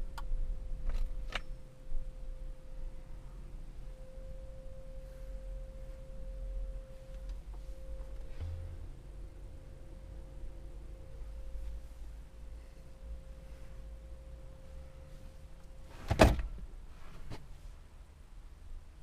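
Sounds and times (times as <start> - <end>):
faint electronic tone: 1.4 - 15.9.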